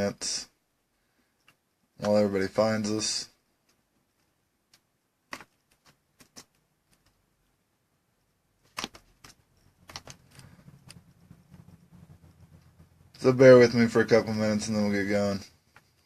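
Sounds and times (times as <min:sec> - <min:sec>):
faint low hum: 0:00.0 - 0:16.0
sharp clicks and taps: 0:03.6 - 0:07.2, 0:08.6 - 0:12.8.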